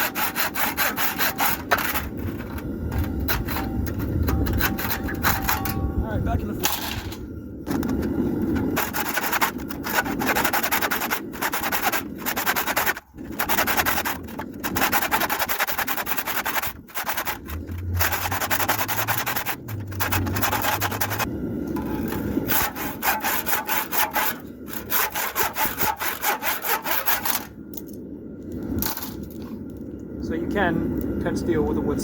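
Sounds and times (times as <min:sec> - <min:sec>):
handsaw cutting through steel: 0:00.0 - 0:05.7, 0:08.6 - 0:21.3, 0:22.0 - 0:27.5.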